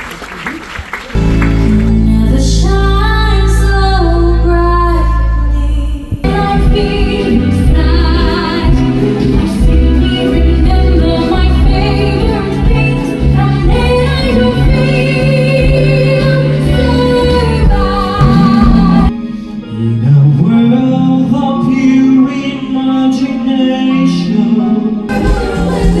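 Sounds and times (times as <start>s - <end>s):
bass line: 1.2s - 19.1s
singers with band accompaniment: 1.6s - 26.0s.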